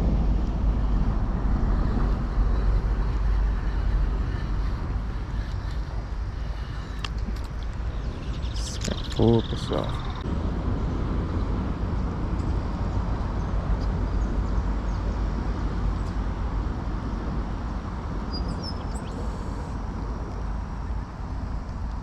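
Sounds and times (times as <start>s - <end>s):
wind rumbling on microphone: 0.0s - 22.0s
faint high bird chirps: 18.3s - 19.3s.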